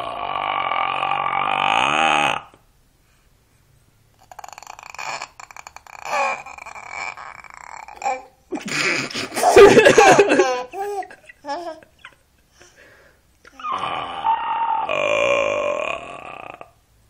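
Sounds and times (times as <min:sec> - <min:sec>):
baby vocal noises: 0:04.2 - 0:09.0, 0:13.4 - 0:14.9
person laughing: 0:08.5 - 0:12.2.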